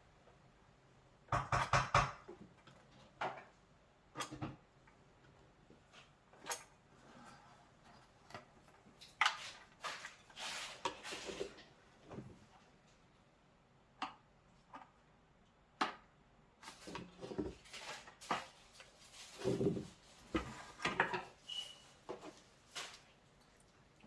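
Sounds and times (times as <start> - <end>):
brief squeak: 21.4 - 22.0.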